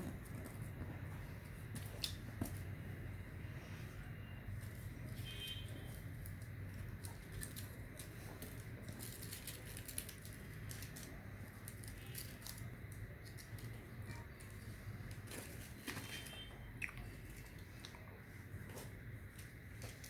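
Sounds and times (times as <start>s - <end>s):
low steady hum: 0.0s - 20.0s
paper crinkling and rustling: 4.5s - 20.0s.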